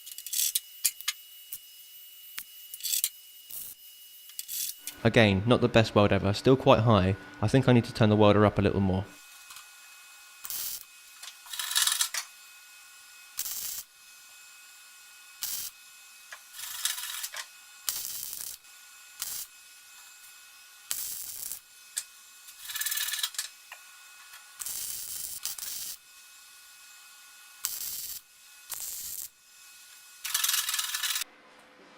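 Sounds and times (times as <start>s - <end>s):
welding arc crackling: 0.0s - 5.0s, 10.3s - 12.5s, 13.1s - 31.2s.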